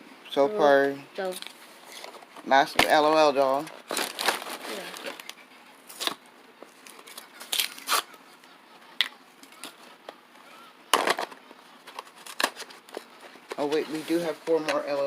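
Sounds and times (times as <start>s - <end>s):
plastic wrapping crinkling and tearing: 1.4s - 8.2s, 11.1s - 14.6s.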